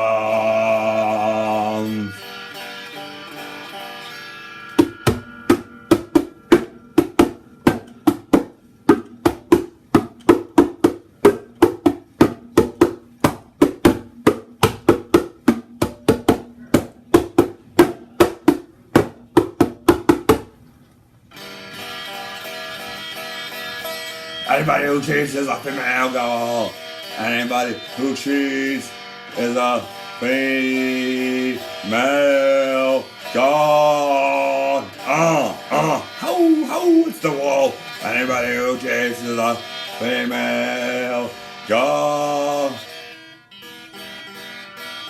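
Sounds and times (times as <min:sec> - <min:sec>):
bongo drums: 0:04.8 - 0:20.6.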